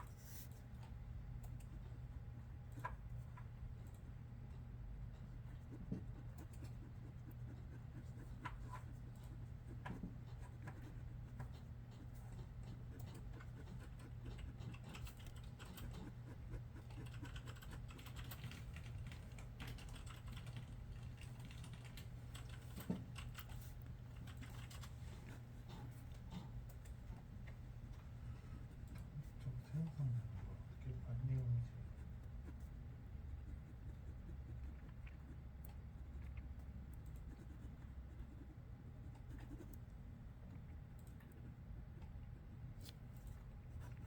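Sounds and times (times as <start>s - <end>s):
low steady hum: 0.0s - 44.0s
computer keyboard typing: 12.6s - 16.1s, 16.8s - 23.6s, 24.2s - 24.9s.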